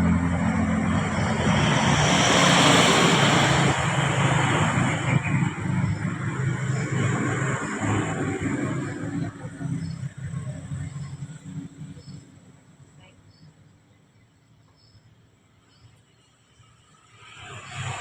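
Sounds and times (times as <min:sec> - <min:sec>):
vehicle passing close by: 0:00.0 - 0:12.2
traffic engine hum: 0:00.0 - 0:18.0.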